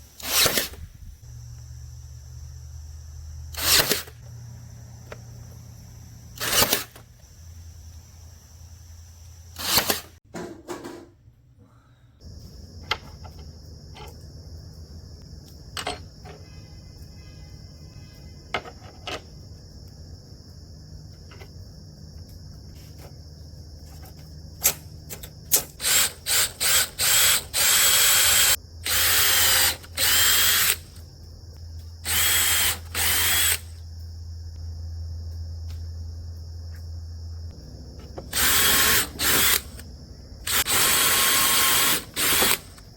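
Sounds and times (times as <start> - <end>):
steady workshop hum: 0.0 - 18.4, 20.4 - 42.9
power drill bursts: 3.5 - 4.2, 6.4 - 7.0, 9.6 - 10.1, 25.8 - 31.0, 32.0 - 33.7, 38.3 - 39.8, 40.5 - 42.8.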